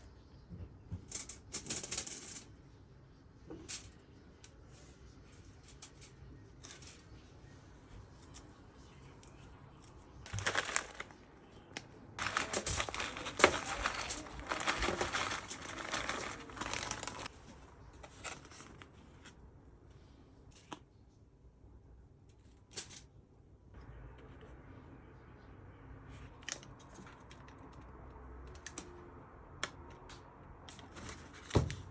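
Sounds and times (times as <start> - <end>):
aluminium foil crinkling: 10.3 - 19.3.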